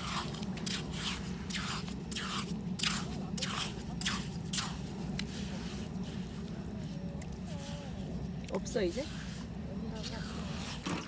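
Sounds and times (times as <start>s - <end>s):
hand rake scraping wet mud: 0.0s - 4.8s, 10.0s - 11.0s.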